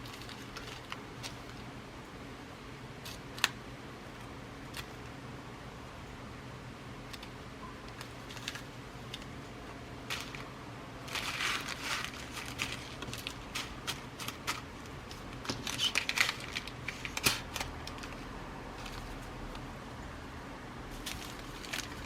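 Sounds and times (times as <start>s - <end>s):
bead packets rustling: 0.0s - 1.6s, 10.0s - 19.5s, 20.9s - 22.0s.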